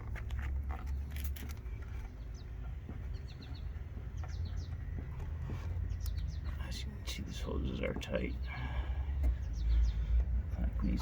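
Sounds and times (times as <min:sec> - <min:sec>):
small birds chirping: 0:00.0 - 0:11.0.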